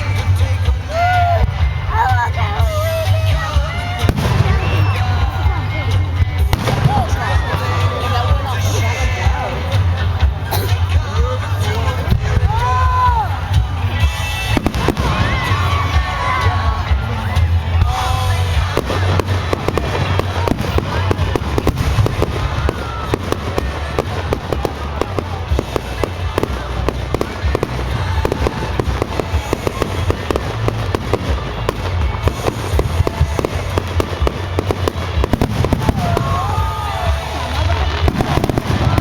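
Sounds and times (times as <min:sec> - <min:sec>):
fireworks bangs and crackles: 0:00.0 - 0:39.0.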